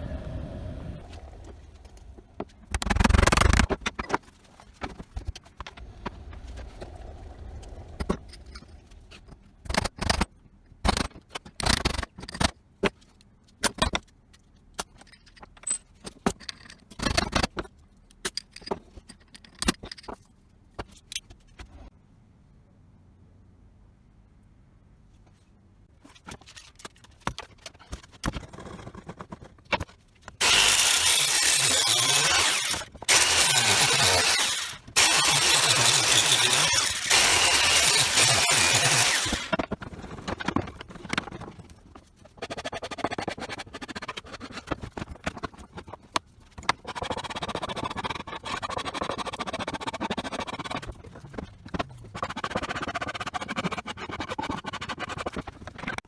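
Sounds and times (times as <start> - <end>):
power tool grinding: 30.4 - 39.6.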